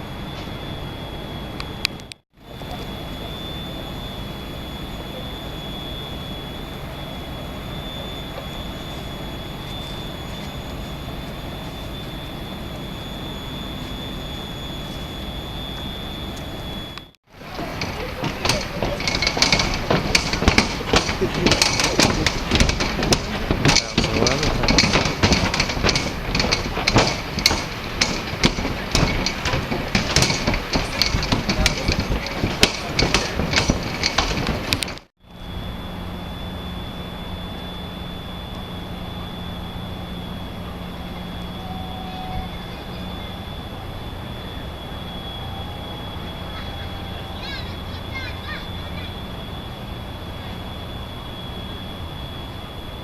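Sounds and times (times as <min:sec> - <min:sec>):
high-pitched whine: 0:00.0 - 0:53.0
mechanical drone: 0:00.0 - 0:53.0
steady rumbling noise: 0:00.0 - 0:53.0
clatter of knocks and clicks: 0:17.5 - 0:35.1.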